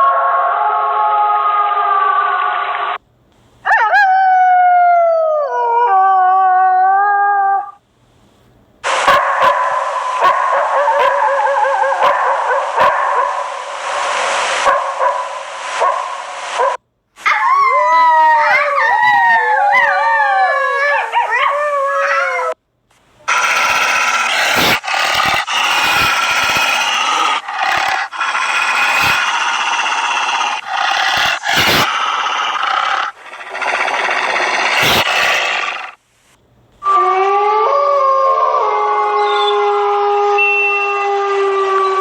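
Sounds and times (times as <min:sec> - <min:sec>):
wolves howling and yipping: 0:10.2 - 0:13.0, 0:17.2 - 0:22.6, 0:23.3 - 0:35.4.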